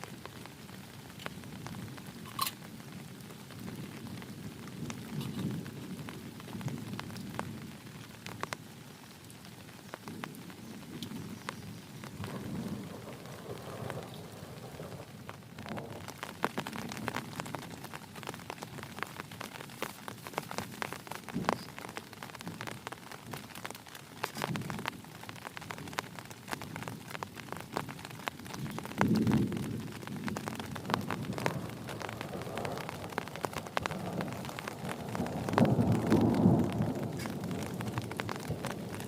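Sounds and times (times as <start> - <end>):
heavy rain falling: 0.0 - 39.0
thunder rumbling: 10.0 - 23.6, 27.7 - 39.0.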